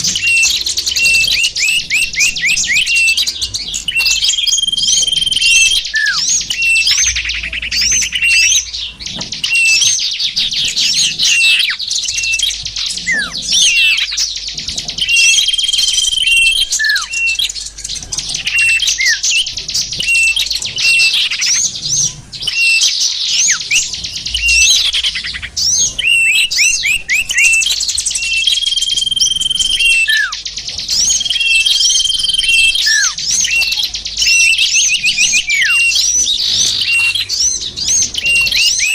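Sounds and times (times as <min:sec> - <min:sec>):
small birds twittering: 0:00.0 - 0:38.9
sharp falling whistles: 0:26.0 - 0:30.4.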